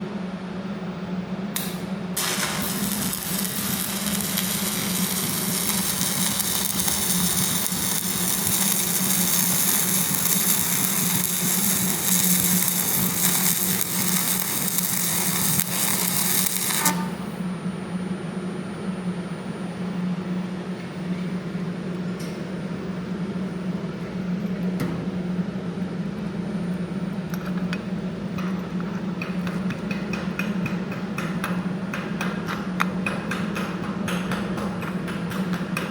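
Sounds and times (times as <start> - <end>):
arc welding crackling hiss: 1.6 - 17.4.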